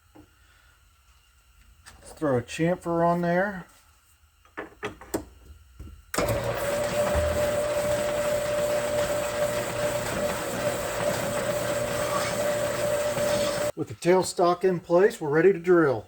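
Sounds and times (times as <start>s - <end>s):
metal lathe running: 6.2s - 13.7s.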